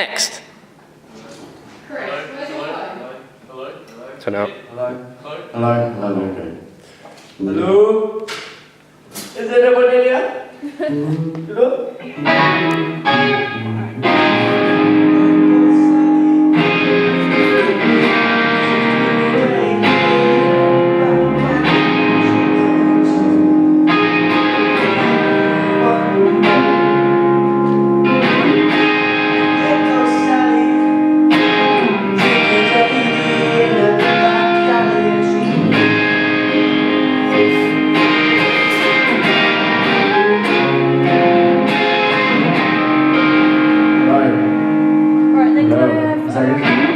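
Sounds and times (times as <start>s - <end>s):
guitar playing chords: 10.8s - 46.9s.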